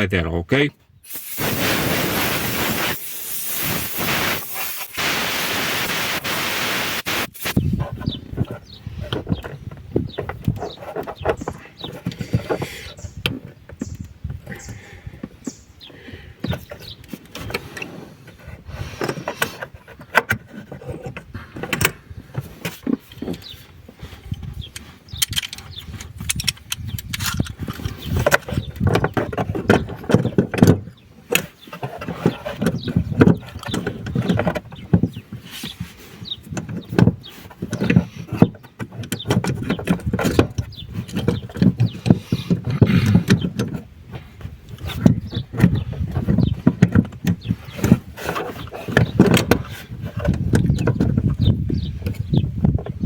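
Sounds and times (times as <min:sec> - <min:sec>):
tools knocking and scraping metal: 0:07.8 - 0:15.6, 0:16.4 - 0:53.0.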